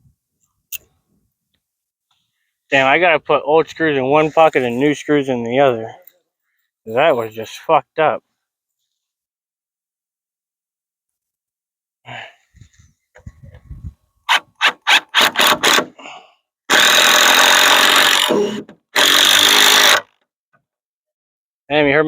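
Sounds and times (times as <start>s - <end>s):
power drill driving screws: 14.3s - 15.9s, 16.7s - 20.2s.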